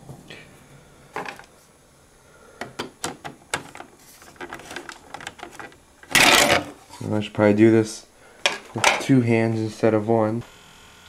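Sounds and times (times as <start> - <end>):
plastic parts clicking and tapping: 2.6 - 6.8, 8.4 - 9.0.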